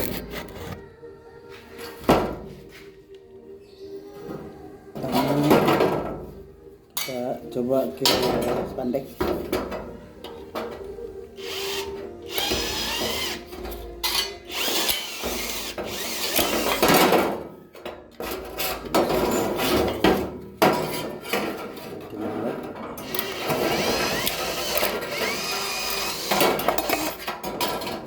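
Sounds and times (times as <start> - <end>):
electric drill cutting sheet metal: 11.4 - 13.4, 14.0 - 16.9, 23.0 - 27.2.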